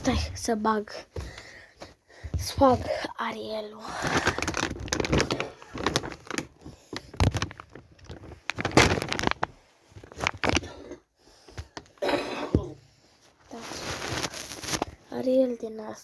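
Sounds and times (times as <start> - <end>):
plastic packaging clicks and rustles: 3.8 - 12.0, 13.4 - 15.1.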